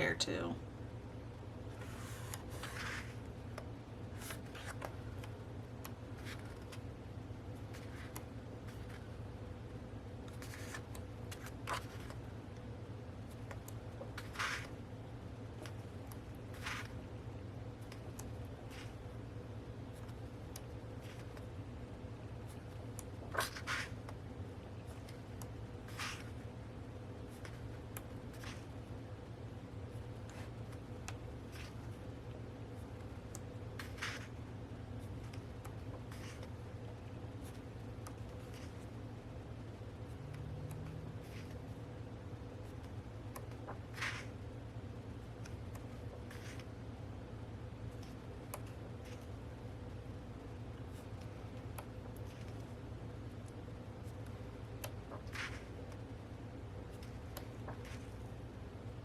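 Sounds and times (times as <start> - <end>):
steady low hum: 0.0 - 59.0
pages rustling: 1.7 - 6.9, 7.5 - 9.2, 10.2 - 12.3, 13.2 - 14.8, 15.6 - 17.0, 22.4 - 24.2, 24.9 - 26.5, 27.2 - 28.8, 30.2 - 32.0, 33.7 - 36.6, 37.4 - 39.0, 40.8 - 41.7, 42.6 - 44.4, 45.4 - 46.8, 54.0 - 56.0, 56.8 - 58.3
page swishes: 1.8 - 3.2, 14.2 - 14.8, 25.9 - 26.4, 33.8 - 34.4, 43.7 - 44.4, 55.1 - 55.8.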